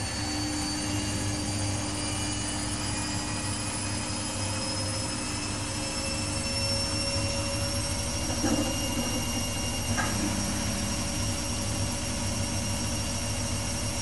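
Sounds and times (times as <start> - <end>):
motor whine rising in pitch: 0.0 - 14.0
washing machine running: 0.0 - 14.0.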